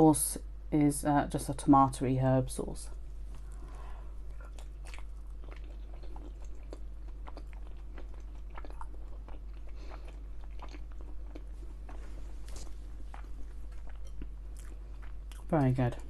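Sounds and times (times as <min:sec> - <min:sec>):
steady low hum: 0:00.0 - 0:16.0
wet chewing mouth sounds: 0:03.3 - 0:15.6.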